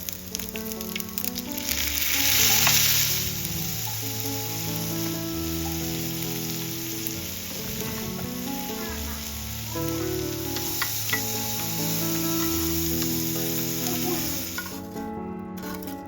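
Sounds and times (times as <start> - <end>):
food sizzling in a pan: 0.0 - 15.0
background music with held notes: 0.0 - 16.0.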